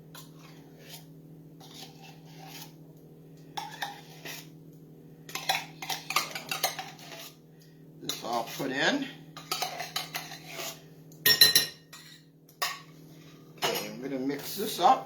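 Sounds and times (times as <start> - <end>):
steady low hum: 0.0 - 15.0
spoon scraping and clinking: 5.3 - 7.4, 9.4 - 12.9, 13.6 - 14.8.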